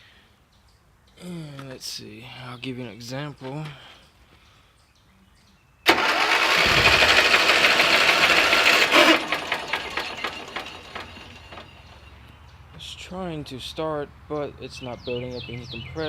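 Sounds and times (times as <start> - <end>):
electric starter cranking engine: 5.9 - 12.1
starter winding down with ticks: 5.9 - 12.1.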